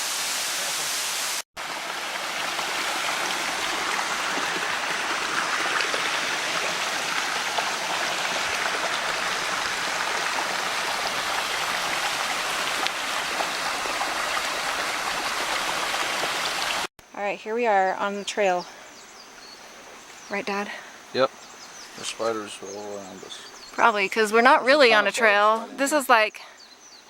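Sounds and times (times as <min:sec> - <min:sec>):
stream and waterfall rushing: 0:00.0 - 0:16.9.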